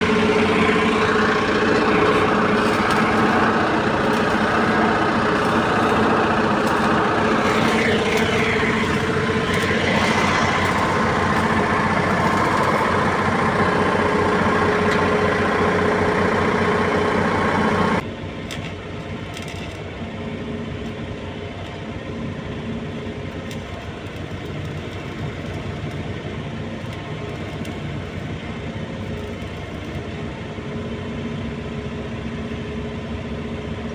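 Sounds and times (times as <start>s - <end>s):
arc welding crackling: 0.0s - 20.0s, 23.3s - 30.3s
engine running: 0.0s - 33.9s.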